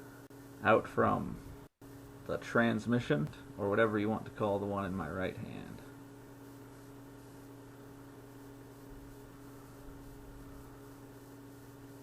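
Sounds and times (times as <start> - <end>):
faint electrical hum with hiss: 0.0 - 12.0.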